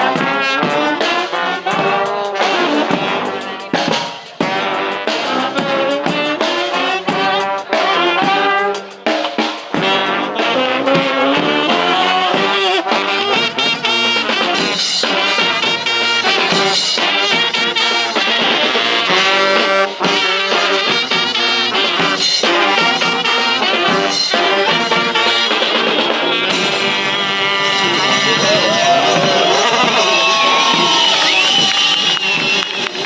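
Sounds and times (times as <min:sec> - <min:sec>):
brass band playing: 0:00.0 - 0:33.0
percussion hits: 0:20.0 - 0:33.0.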